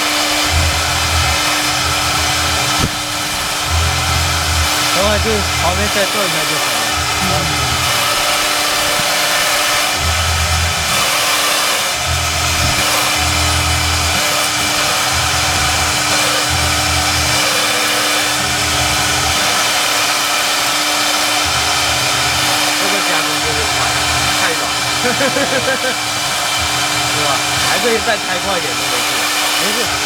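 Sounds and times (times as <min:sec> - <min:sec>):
low drone: 0:00.0 - 0:11.1
router spindle humming: 0:00.0 - 0:30.0.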